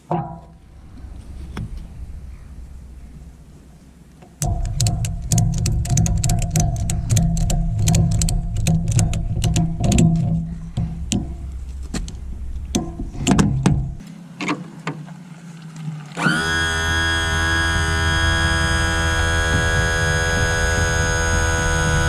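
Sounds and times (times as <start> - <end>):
percussive plucked notes: 0.0 - 14.0
sustained electronic chord: 0.5 - 14.0.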